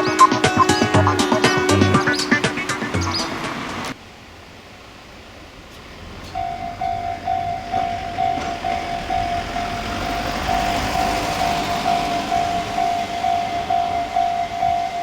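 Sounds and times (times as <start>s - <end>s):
level crossing warning bell: 6.3s - 15.0s.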